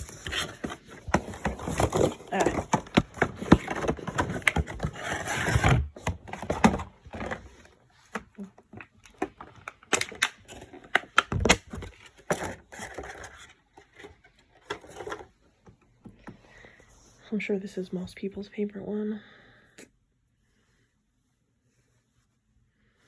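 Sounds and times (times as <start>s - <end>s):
packaging clicks and scrapes: 0.0s - 15.4s.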